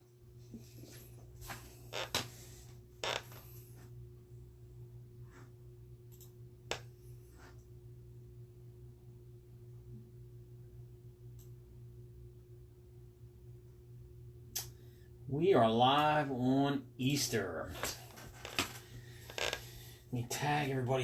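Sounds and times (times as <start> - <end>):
low electrical hum: 0.0 - 21.0
rustles and clicks of handling: 17.7 - 19.7.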